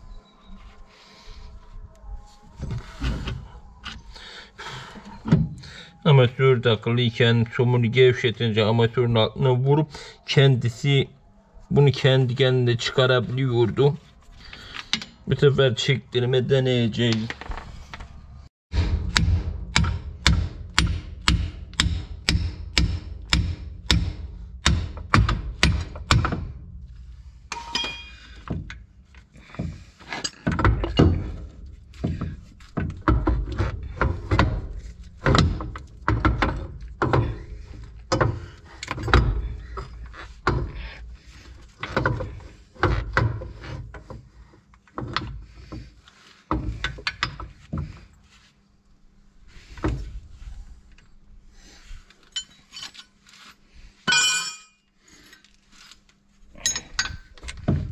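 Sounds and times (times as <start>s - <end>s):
hammer blows on steel: 27.5s - 28.4s.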